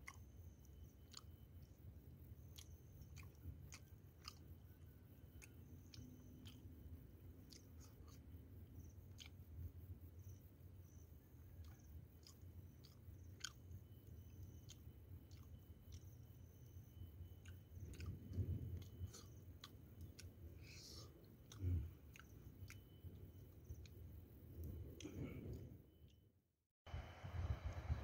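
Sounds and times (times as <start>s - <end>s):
person chewing food: 0.0s - 1.8s, 2.4s - 9.5s, 10.2s - 24.0s
mouth clicks: 2.4s - 6.7s, 7.4s - 9.5s, 11.6s - 24.0s.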